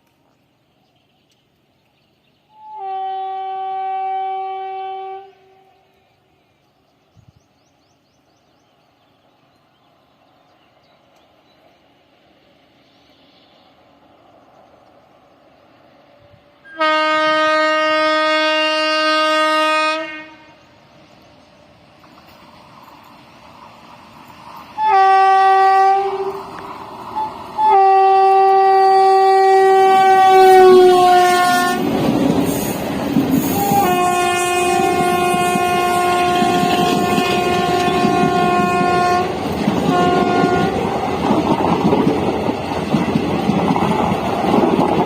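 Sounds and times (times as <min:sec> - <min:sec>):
passing train coaches clattering: 0:00.0 - 0:05.6, 0:06.2 - 0:45.0
locomotive horn blasts: 0:02.6 - 0:05.8, 0:16.6 - 0:20.6, 0:24.8 - 0:26.5, 0:27.2 - 0:31.9, 0:33.4 - 0:40.9.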